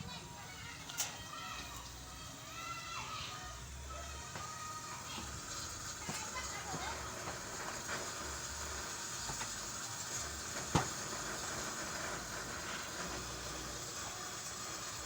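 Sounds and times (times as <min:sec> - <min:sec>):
steady hiss: 0:00.0 - 0:15.0.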